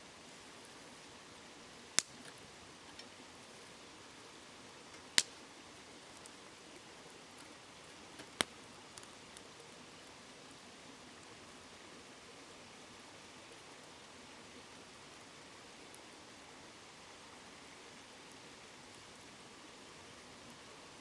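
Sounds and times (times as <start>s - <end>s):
campfire crackling and popping: 0.3s - 3.9s, 4.8s - 10.6s, 14.8s - 17.0s, 17.6s - 21.0s.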